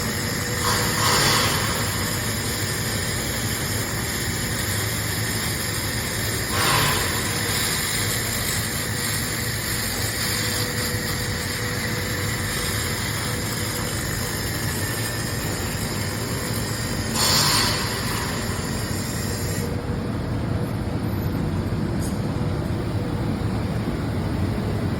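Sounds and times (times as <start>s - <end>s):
laser cleaning machine humming: 0.0s - 19.8s.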